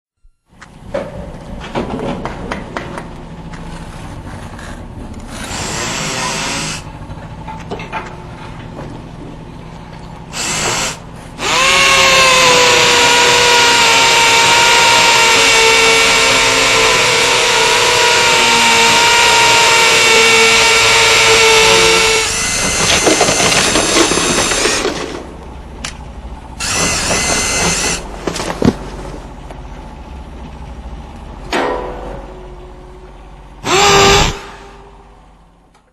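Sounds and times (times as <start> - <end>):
power drill motor whining: 5.3 - 6.9, 10.3 - 25.0, 26.6 - 28.7, 33.6 - 34.8.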